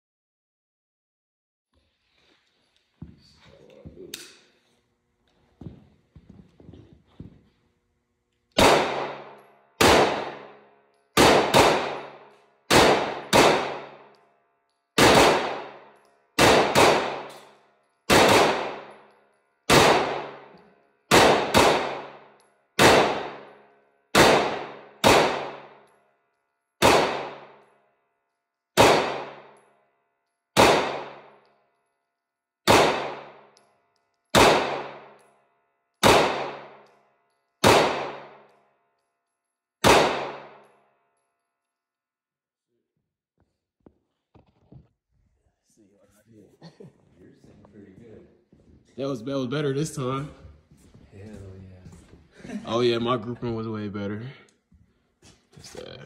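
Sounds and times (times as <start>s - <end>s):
pistol shots with ringing tail: 8.6s - 14.4s, 15.0s - 26.1s, 26.8s - 27.9s, 28.8s - 29.9s, 30.6s - 31.6s, 32.6s - 38.8s, 39.8s - 40.9s.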